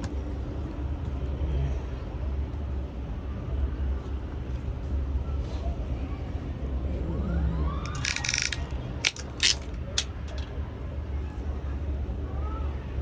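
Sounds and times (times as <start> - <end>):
crimping tool clicking: 7.9 - 10.5.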